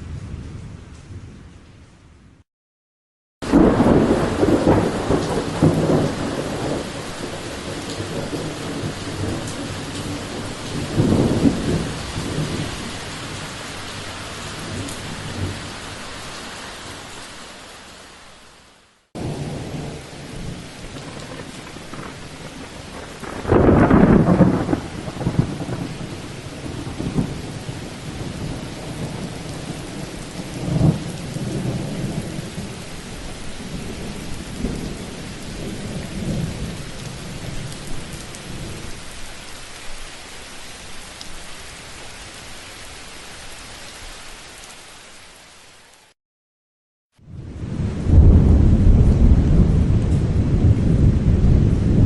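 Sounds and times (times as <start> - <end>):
steady rain: 0.0 - 2.1, 3.4 - 46.2, 47.2 - 52.0
thunderclap: 3.4 - 12.7, 19.2 - 29.4, 30.6 - 32.7, 47.3 - 52.0
rolling thunder: 3.4 - 13.4, 19.2 - 32.9, 33.6 - 38.9, 47.2 - 52.0.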